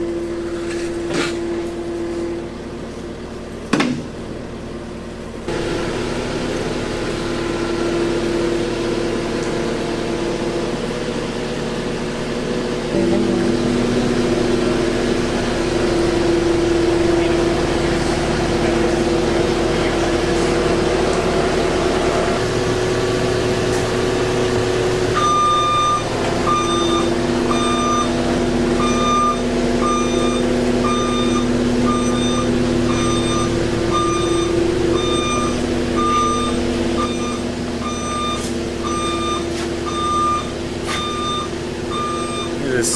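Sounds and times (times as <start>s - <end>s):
vehicle engine running: 0.0s - 42.9s
reversing alarm beeping: 25.1s - 42.9s.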